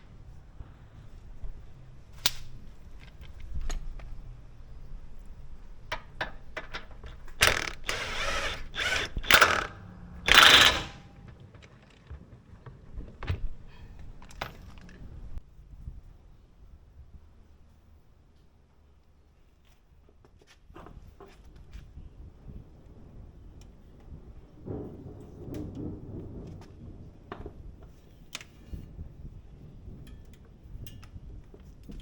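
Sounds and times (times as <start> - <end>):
metal tool clicks and knocks: 5.9 - 12.0
rasping noise bursts: 7.4 - 11.1.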